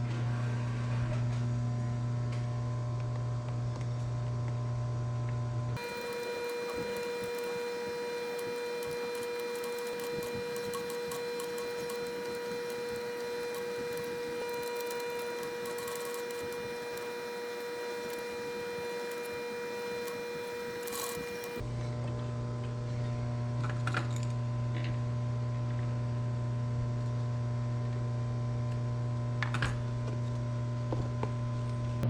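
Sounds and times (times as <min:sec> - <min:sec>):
small electric machine whining: 0:05.7 - 0:21.9.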